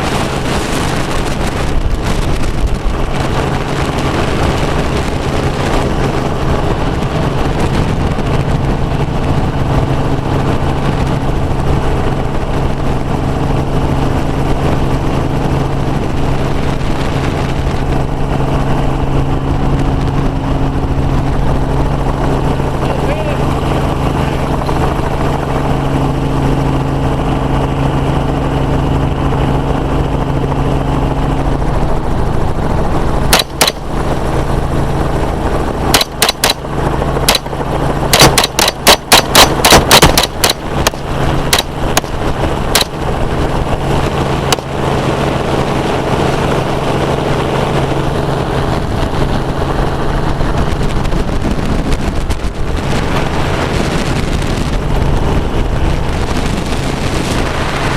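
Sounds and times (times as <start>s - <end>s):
helicopter running: 0.0s - 57.9s
rifle shots: 33.3s - 33.8s, 35.9s - 36.6s, 38.1s - 42.2s, 42.8s - 43.0s.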